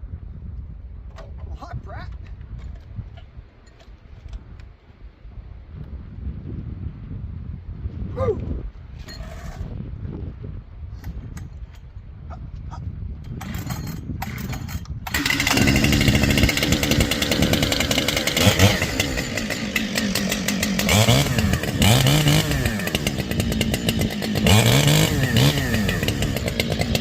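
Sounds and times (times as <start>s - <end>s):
chainsaw starting and revving: 13.3s - 27.0s.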